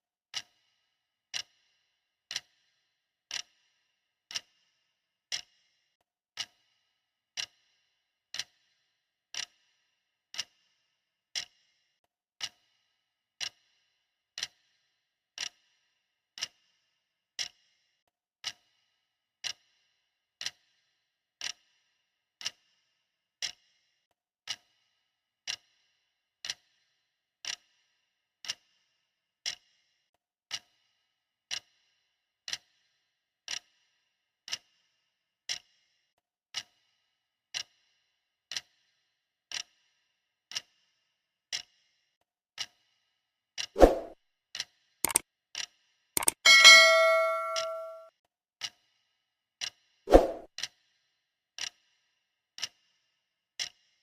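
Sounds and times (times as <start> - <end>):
clock ticking: 46.2 - 48.0.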